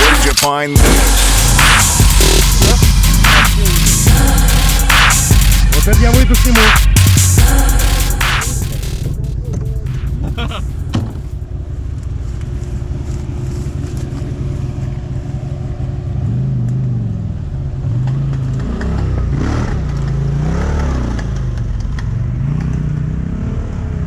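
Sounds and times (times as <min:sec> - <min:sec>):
quad bike engine revving: 0:17.9 - 0:24.0.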